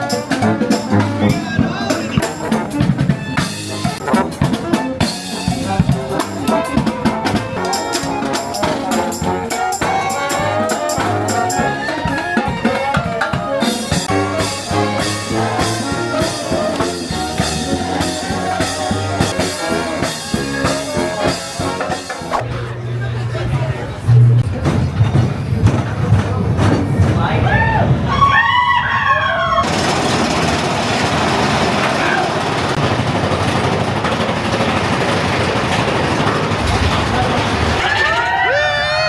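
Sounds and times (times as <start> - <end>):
upbeat brass music with drums: 0.0 - 22.5.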